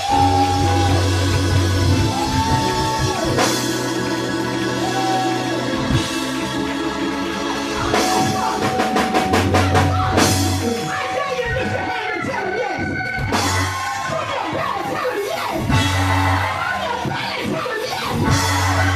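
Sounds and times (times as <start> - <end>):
drum kit playing: 0.0 - 11.7, 13.2 - 18.9
gospel band music: 0.0 - 18.9
voices singing: 0.0 - 18.9.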